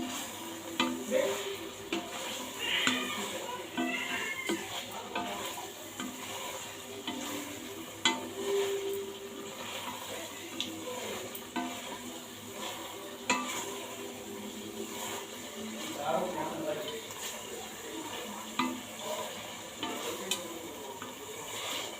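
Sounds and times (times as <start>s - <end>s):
food sizzling in a pot: 0.0s - 21.9s
metal spoon clinking against pot: 13.2s - 14.2s, 18.5s - 21.1s.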